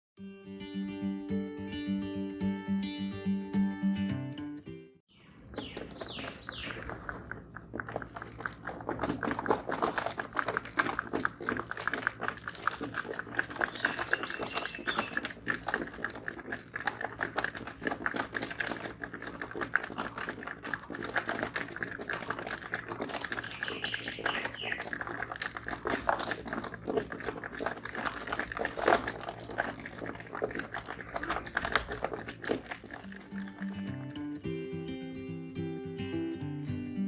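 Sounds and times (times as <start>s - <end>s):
pigeons pecking hard surface: 5.2s - 34.1s.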